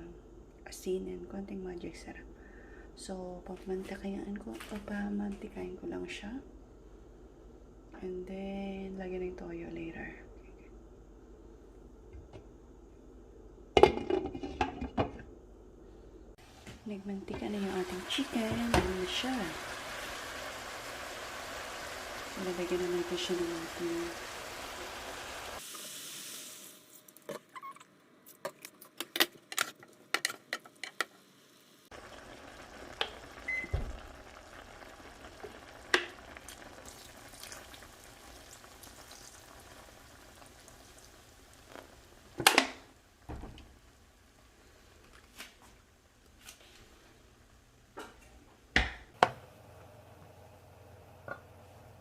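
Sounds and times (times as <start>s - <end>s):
chicken sizzling in oil: 17.4s - 27.0s, 31.6s - 42.4s.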